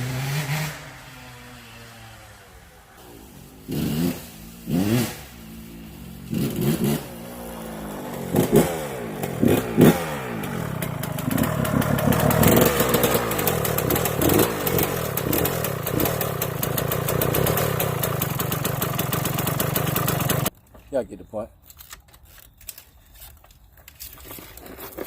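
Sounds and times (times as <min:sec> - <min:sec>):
two-stroke engine revving: 0:03.5 - 0:20.5.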